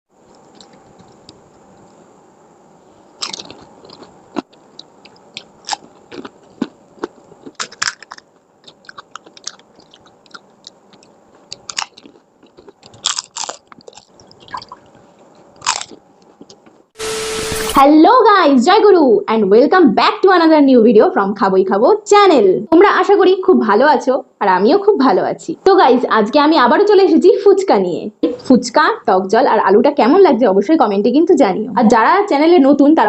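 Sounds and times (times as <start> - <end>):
crisp shells crunching: 3.2 - 16.6.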